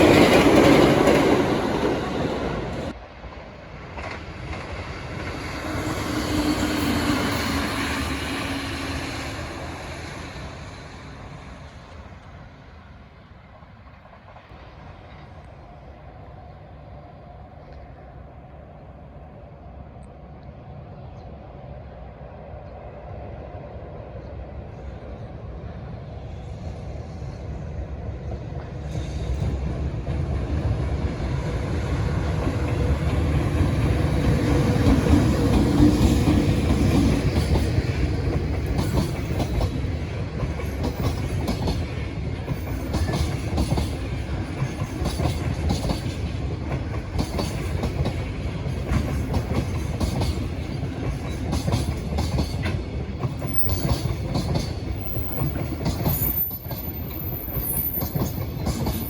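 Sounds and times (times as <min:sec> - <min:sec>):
locomotive passing with low hum: 0:00.0 - 0:59.0
wagons clattering over rail joints: 0:38.4 - 0:59.0.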